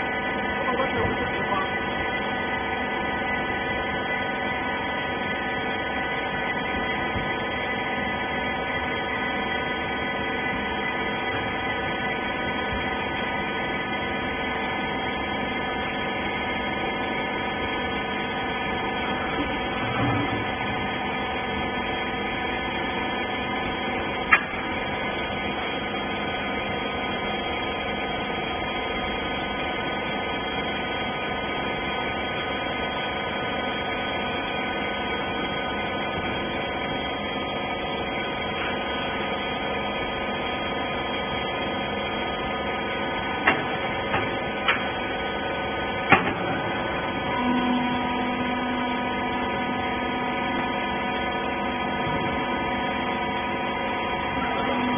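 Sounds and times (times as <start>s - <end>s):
baler machine hum: 0.0s - 54.9s
low machine tone: 0.0s - 54.9s
sharp clicks and knocks: 43.4s - 44.9s, 46.1s - 46.5s.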